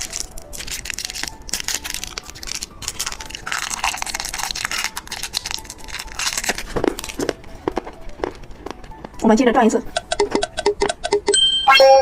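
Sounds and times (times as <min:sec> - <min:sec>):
plastic wrapper crinkling: 0:00.0 - 0:09.2.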